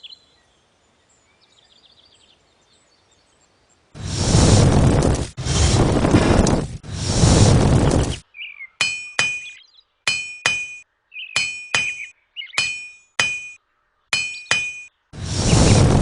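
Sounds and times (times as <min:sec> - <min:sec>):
burst of wind-like noise: 0:04.0 - 0:08.2, 0:15.2 - 0:16.0
hammer striking anvil: 0:08.8 - 0:10.8, 0:11.4 - 0:14.9.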